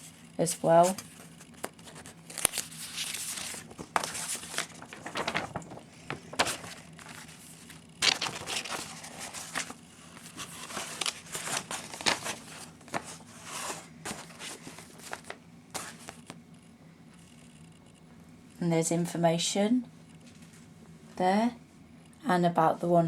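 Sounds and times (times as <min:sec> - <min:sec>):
paper crinkling and rustling: 0:00.0 - 0:16.4.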